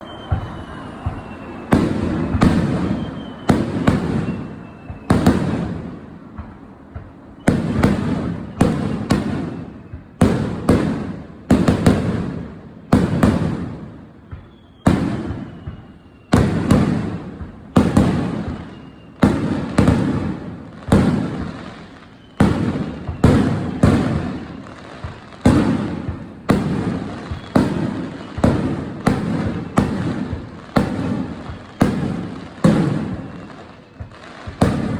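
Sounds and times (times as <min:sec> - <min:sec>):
falling whistle: 0:00.0 - 0:05.7, 0:13.9 - 0:17.2, 0:17.8 - 0:20.0, 0:21.4 - 0:24.7, 0:27.2 - 0:30.0
fireworks bangs with echo: 0:00.0 - 0:34.9.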